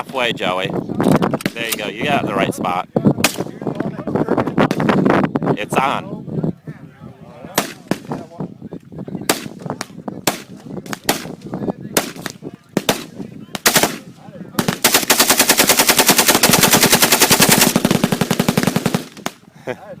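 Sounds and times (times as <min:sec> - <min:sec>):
automatic gunfire: 0:10.3 - 0:11.4, 0:12.0 - 0:19.4.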